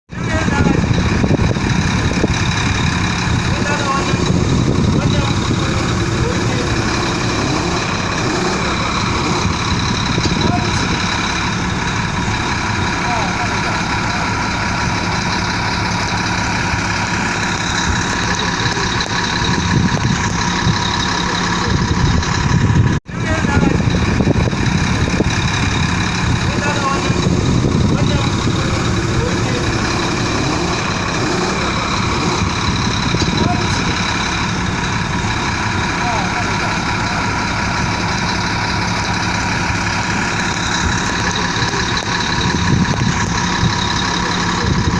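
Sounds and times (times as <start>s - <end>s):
heavy diesel engine running: 0.1s - 44.9s.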